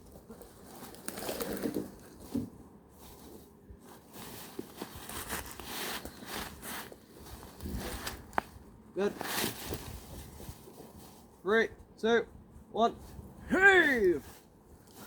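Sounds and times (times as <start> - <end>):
log dragged over forest floor: 0.0 - 8.5.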